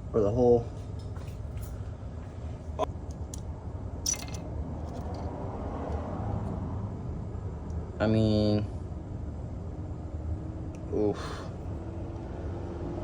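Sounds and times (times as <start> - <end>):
steady low hum: 0.0 - 5.6.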